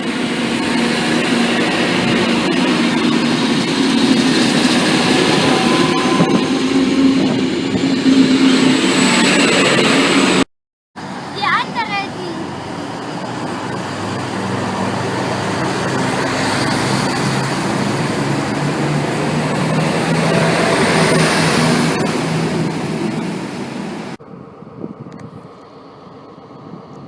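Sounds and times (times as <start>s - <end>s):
low drone: 0.0s - 11.4s
train passing: 0.0s - 27.0s.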